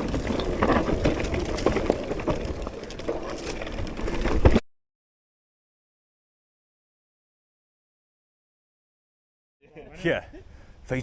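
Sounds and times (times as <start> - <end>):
bike rattling knocks and clicks: 0.0 - 4.6
tyre rumble: 0.0 - 4.6
wind: 0.0 - 4.6, 9.6 - 11.0.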